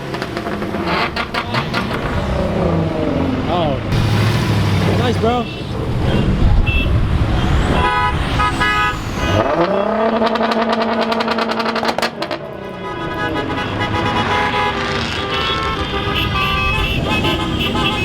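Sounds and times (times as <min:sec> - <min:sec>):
car engine revving with crackles: 0:00.0 - 0:18.0
other cars running: 0:00.0 - 0:18.0
car horn toots: 0:05.0 - 0:07.0, 0:07.7 - 0:10.0, 0:12.8 - 0:18.0.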